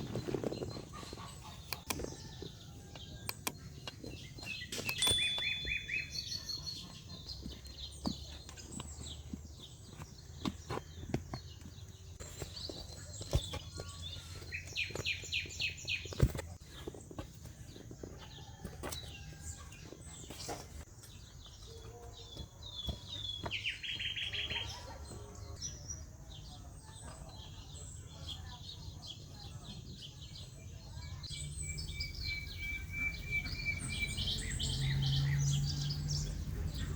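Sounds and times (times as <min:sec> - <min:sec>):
small birds chirping: 0:00.0 - 0:36.9
bird trills: 0:04.5 - 0:07.3.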